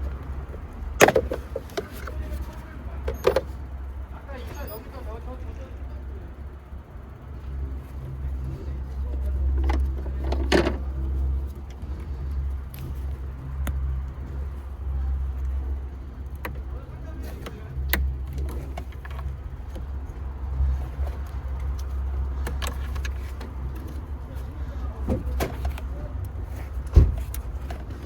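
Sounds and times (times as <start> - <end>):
car engine running: 0.0 - 28.0.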